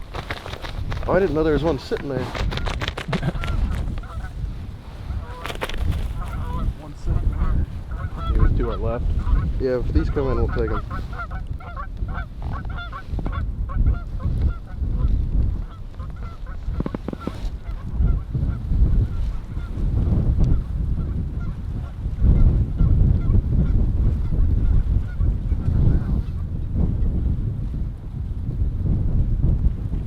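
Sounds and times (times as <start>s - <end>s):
wind rumbling on microphone: 0.0s - 30.0s
geese honking and clucking: 0.2s - 19.9s, 20.5s - 24.4s.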